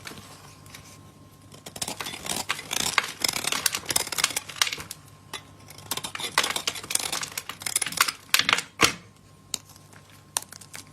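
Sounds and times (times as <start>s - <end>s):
blade scraping soap: 1.5s - 4.9s, 5.6s - 8.2s.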